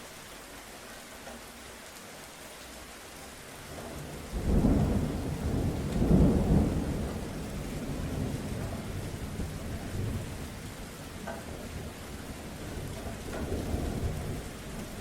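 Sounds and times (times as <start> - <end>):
steady rainfall: 0.0 - 15.0
rolling thunder: 3.7 - 15.0.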